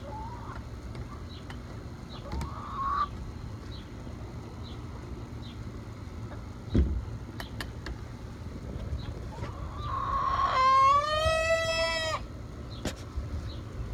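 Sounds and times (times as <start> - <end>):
hen drawn-out call: 9.4 - 12.3.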